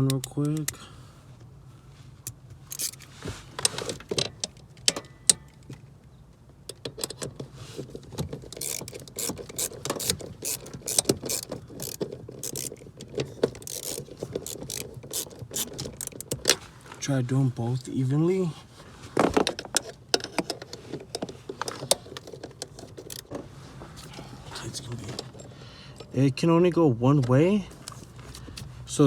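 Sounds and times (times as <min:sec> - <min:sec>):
hand ratchet clicking: 0:02.7 - 0:03.0, 0:08.6 - 0:16.4.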